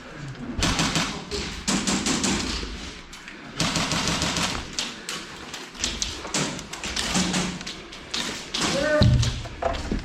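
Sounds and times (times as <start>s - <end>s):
airsoft guns firing full auto: 0.6s - 2.6s, 3.6s - 4.8s.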